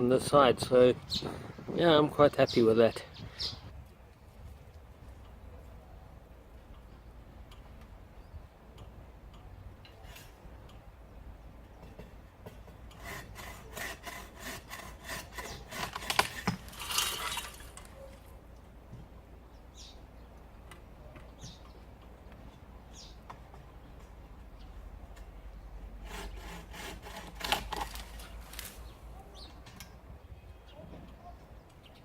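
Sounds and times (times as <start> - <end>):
hand saw cutting wood: 12.9 - 17.8, 26.0 - 28.7.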